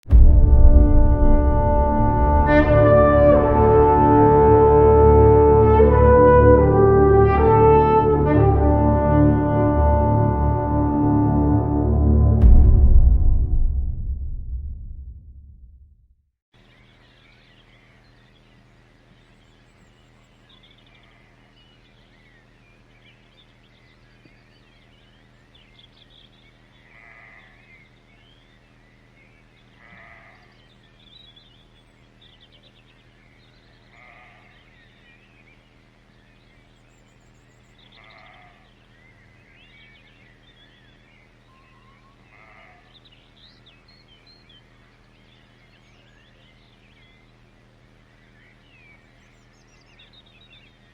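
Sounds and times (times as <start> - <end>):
steady low hum: 0.1 - 15.9
birds chirping: 16.6 - 50.9
loud animal call: 26.8 - 27.7, 29.8 - 30.6, 33.9 - 34.7, 37.9 - 38.7, 41.7 - 43.0.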